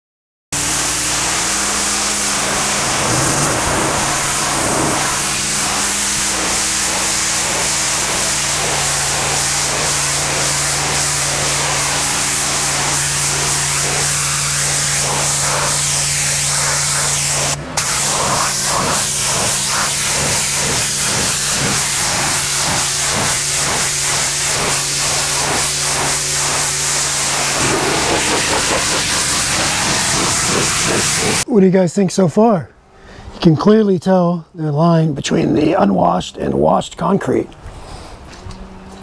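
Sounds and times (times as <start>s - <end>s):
gas engine humming: 0.6s - 15.2s, 25.4s - 31.5s
pressure washer spray hissing: 0.6s - 31.4s.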